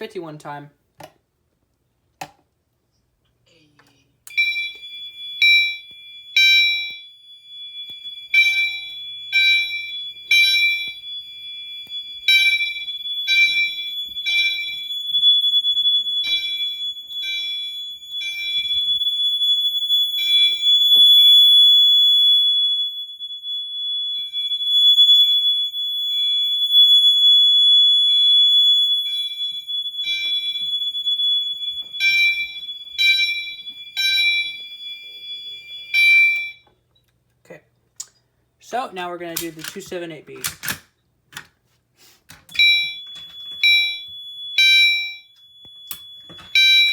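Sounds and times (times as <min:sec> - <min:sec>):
fire alarm horn pulses: 0:04.3 - 0:36.7, 0:42.5 - 0:46.9.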